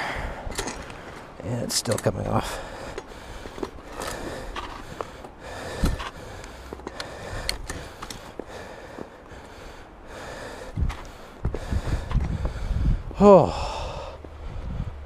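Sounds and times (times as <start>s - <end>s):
bike chain clicking and rattling: 0.4s - 8.4s.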